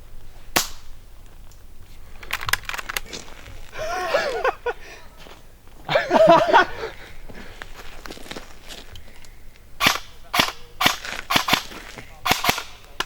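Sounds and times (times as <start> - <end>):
airsoft gun shots: 0.5 - 1.0, 9.8 - 13.0.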